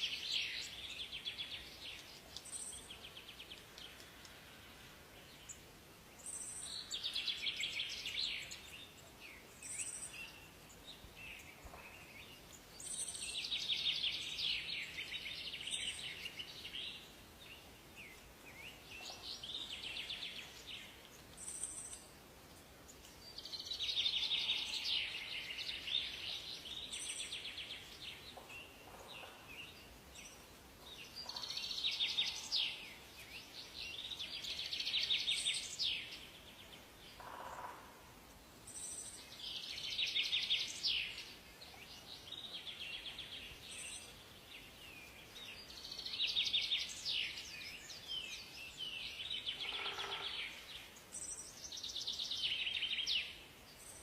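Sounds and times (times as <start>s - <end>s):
songbirds trilling: 22.8s - 54.0s.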